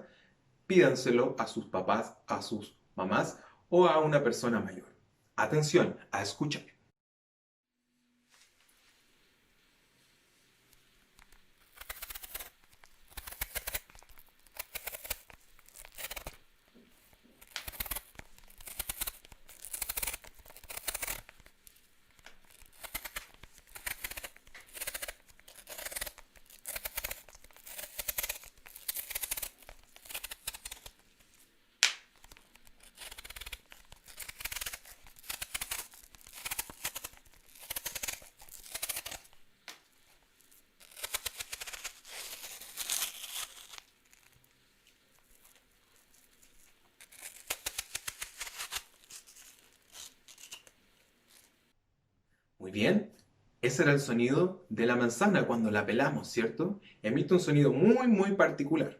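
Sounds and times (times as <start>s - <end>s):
knife peeling apple skin: 10.7s - 51.6s.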